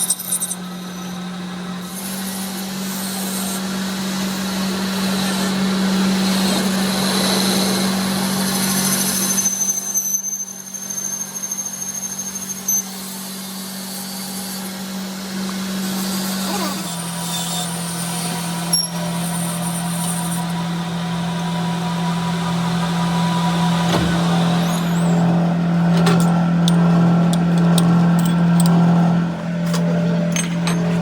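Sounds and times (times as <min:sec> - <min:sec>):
metallic clicks and clinks: 0:00.0 - 0:00.6, 0:26.2 - 0:28.9, 0:29.7 - 0:31.0
engine running: 0:20.2 - 0:31.0.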